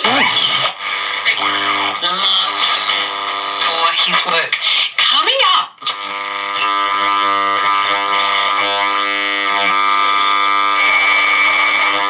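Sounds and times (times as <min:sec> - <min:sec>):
music from radio speaker: 0:00.0 - 0:05.0.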